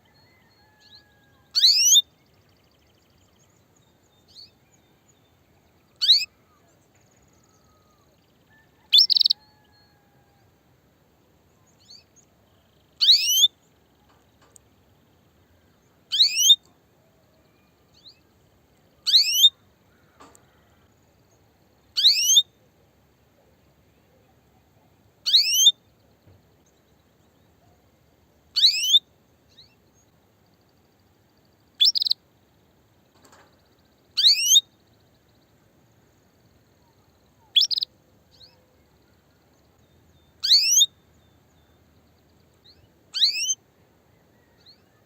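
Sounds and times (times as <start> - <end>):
faint chirps: 0.0 - 45.0
canary chirping: 1.6 - 2.0, 6.0 - 6.3, 9.0 - 9.4, 13.0 - 13.5, 16.1 - 16.6, 19.0 - 19.5, 22.0 - 22.4, 25.2 - 25.7, 28.6 - 29.0, 31.8 - 32.2, 34.2 - 34.6, 37.5 - 37.9, 40.4 - 40.9, 42.7 - 43.6.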